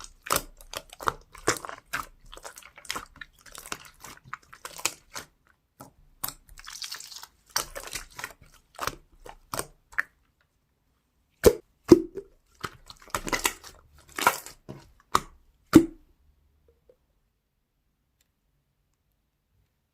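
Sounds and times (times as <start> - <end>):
slime squishing with sticky pops: 0.0 - 10.4, 11.4 - 16.1.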